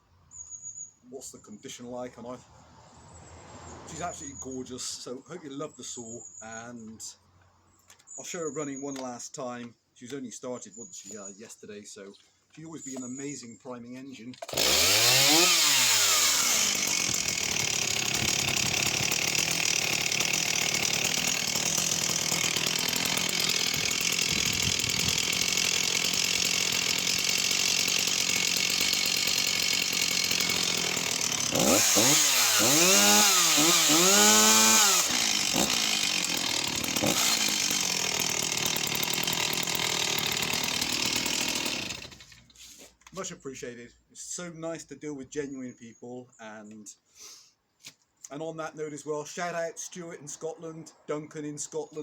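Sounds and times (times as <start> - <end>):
chainsaw engine idling and revving: 3.2 - 4.5, 14.4 - 42.5.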